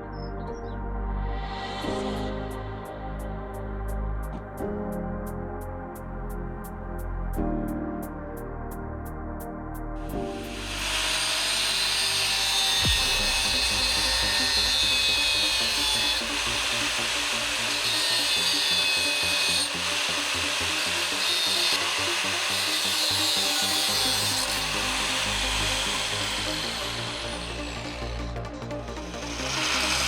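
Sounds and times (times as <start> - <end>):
background music: 0.0 - 30.0
power tool cutting metal pipe: 10.3 - 30.0.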